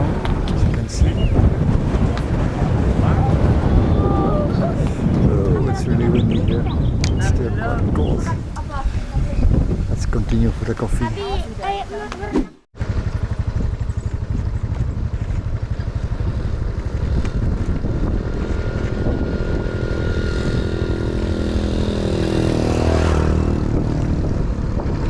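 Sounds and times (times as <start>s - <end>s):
wind buffeting microphone: 0.0s - 25.0s
motorcycle engine accelerating: 12.8s - 25.0s.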